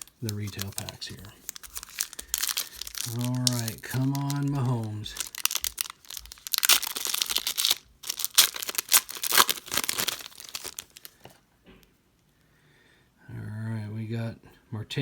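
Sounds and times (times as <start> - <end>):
wrapper tearing and crinkling: 0.0 - 11.2.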